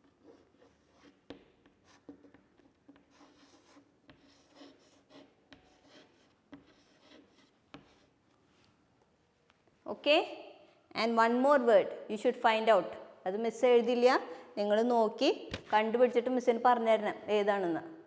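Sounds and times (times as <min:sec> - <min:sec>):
pen scratching handwriting: 0:00.1 - 0:08.1.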